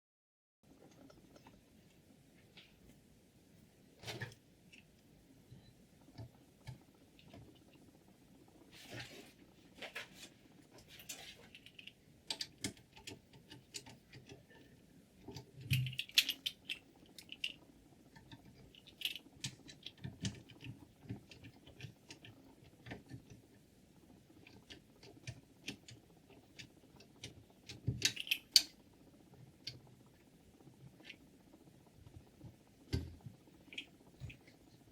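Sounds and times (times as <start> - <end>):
small hard objects clicking: 26.6 - 28.8.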